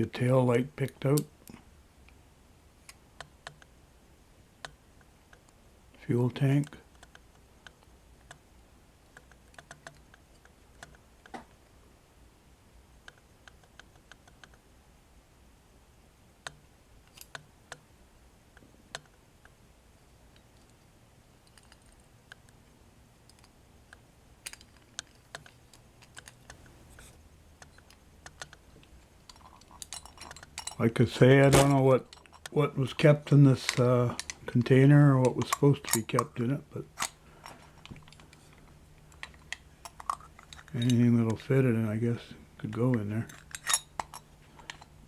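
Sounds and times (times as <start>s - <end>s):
metal toy clicking in hands: 24.4s - 26.6s.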